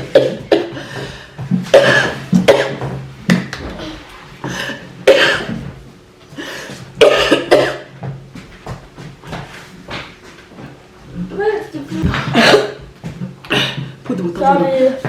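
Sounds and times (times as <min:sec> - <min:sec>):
person coughing: 0:00.0 - 0:02.9, 0:03.8 - 0:05.6, 0:07.0 - 0:07.9, 0:12.2 - 0:12.8, 0:13.4 - 0:14.0.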